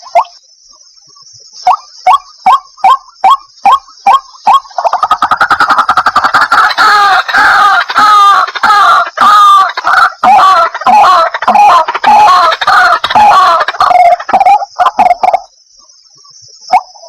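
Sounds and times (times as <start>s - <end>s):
waterhen calling: 1.7s - 15.5s.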